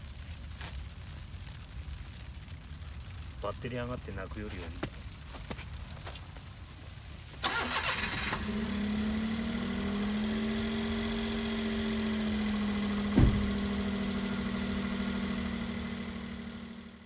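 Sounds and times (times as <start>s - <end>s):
starter motor cranking: 7.4s - 8.5s
car engine idling: 7.4s - 17.0s
short knock: 13.2s - 13.6s.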